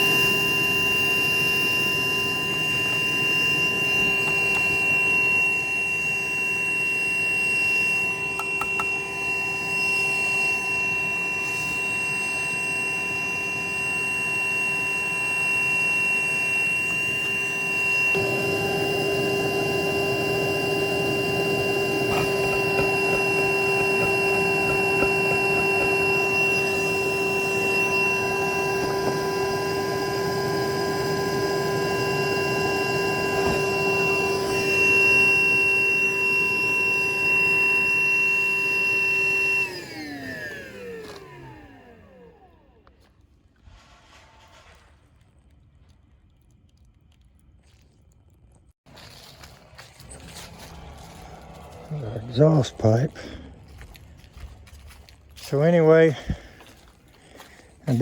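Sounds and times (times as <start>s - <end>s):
electric fan humming: 15.1s - 42.4s.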